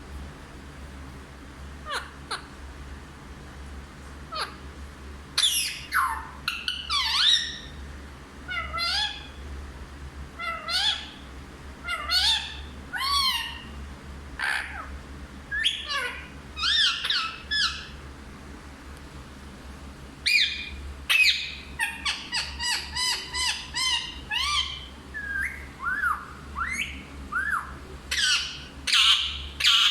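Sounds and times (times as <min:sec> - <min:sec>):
parrot squawking: 0:01.8 - 0:02.5, 0:04.3 - 0:04.6, 0:05.4 - 0:07.7, 0:08.5 - 0:09.3, 0:10.4 - 0:11.2, 0:11.8 - 0:13.7, 0:14.4 - 0:14.9, 0:15.5 - 0:18.0, 0:20.3 - 0:29.9.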